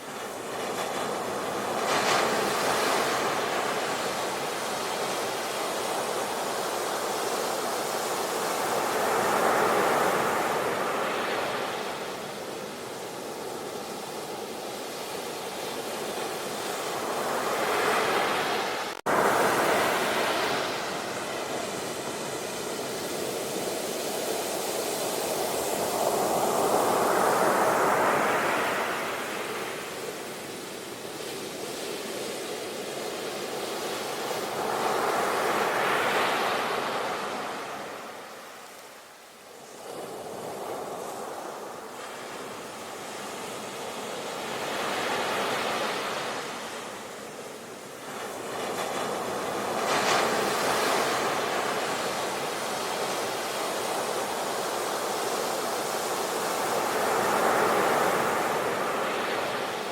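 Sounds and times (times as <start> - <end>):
waves breaking: 0.0 - 32.2.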